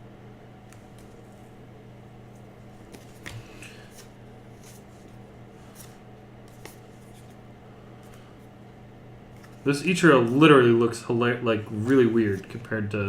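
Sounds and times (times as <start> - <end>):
low room hum: 0.0 - 13.0
cardboard cards rustling: 2.3 - 7.4, 9.3 - 10.5, 11.7 - 12.6.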